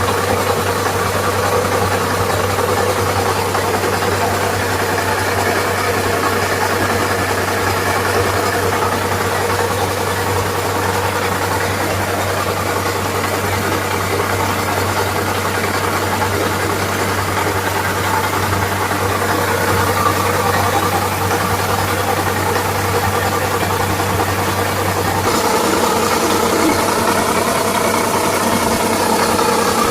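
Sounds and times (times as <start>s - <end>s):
harvester engine droning: 0.0s - 29.9s.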